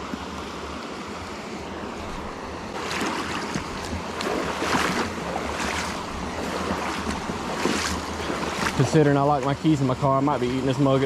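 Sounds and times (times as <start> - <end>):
river current rushing: 0.5 - 11.0
water sloshing from wading: 1.6 - 11.0.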